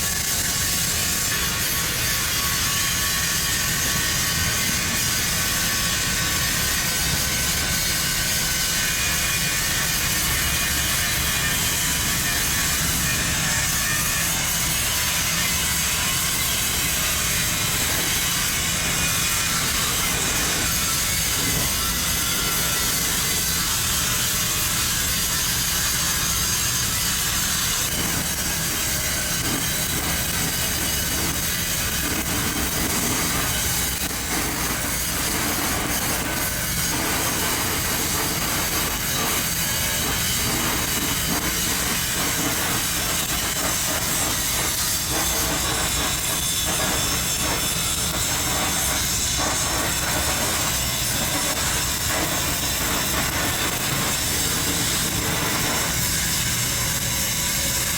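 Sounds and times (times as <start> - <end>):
welding arc crackling hiss: 0.0 - 57.9.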